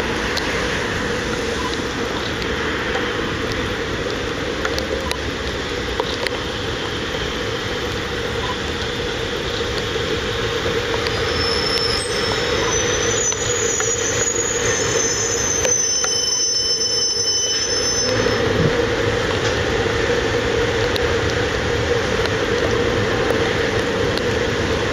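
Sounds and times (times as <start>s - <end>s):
freight train wheels rumbling: 0.0s - 24.9s
train wheels squealing: 11.0s - 18.6s.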